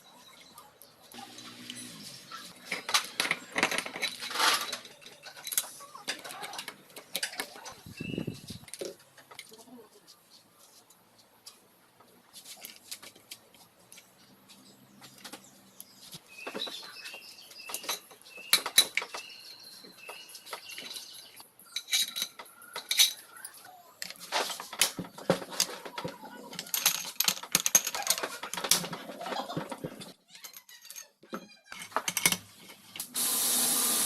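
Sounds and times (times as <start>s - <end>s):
metal tools clinking: 2.4s - 9.5s, 17.6s - 32.5s.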